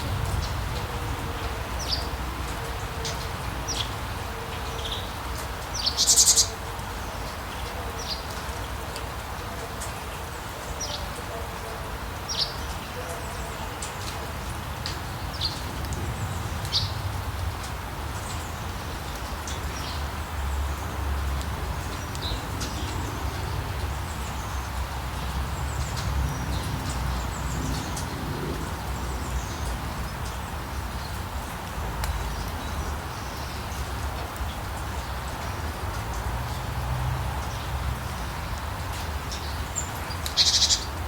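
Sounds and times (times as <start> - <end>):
low rumble: 0.0 - 2.6
rain falling on a street: 0.0 - 41.0.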